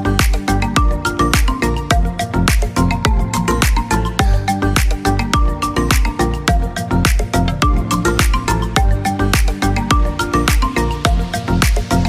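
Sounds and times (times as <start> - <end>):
upbeat electronic music: 0.0 - 12.0.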